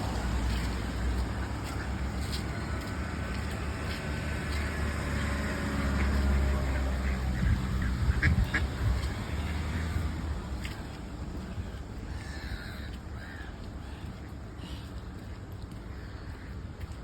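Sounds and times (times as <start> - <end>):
ducks quacking: 1.0 - 10.1.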